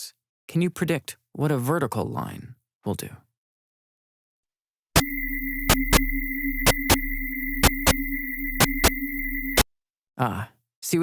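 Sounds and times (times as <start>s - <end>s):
short noise bursts: 5.0s - 9.6s
steady synthetic tones: 5.0s - 9.6s.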